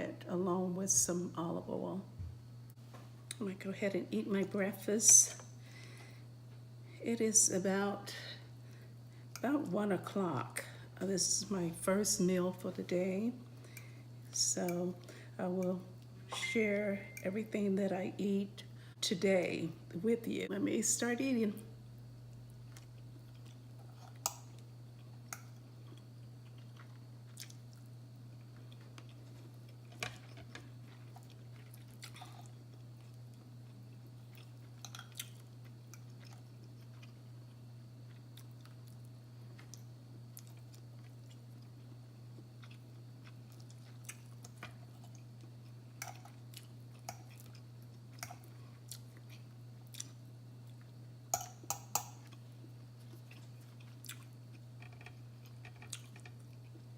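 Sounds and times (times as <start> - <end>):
steady low hum: 0.0 - 56.9
faint chewing: 22.6 - 56.9.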